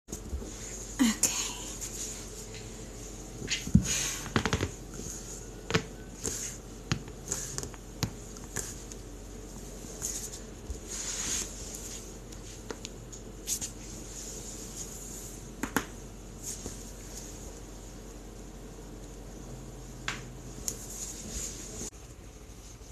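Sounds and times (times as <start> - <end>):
soft rustling: 8.4 - 15.4, 20.6 - 22.9.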